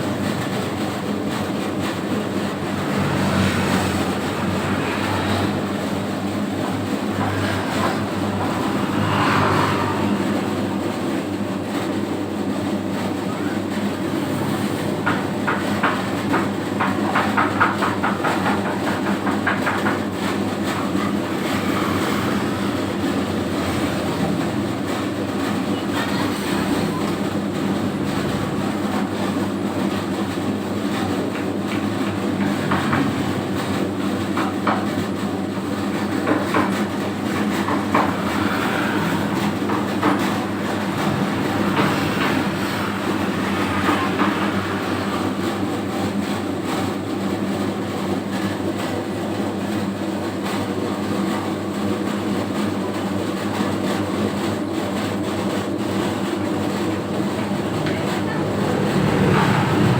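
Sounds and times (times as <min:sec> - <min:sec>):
dough mixer motor hum: 0:00.0 - 0:11.6, 0:13.8 - 0:47.9
mixer rattling clatter: 0:00.0 - 0:59.9.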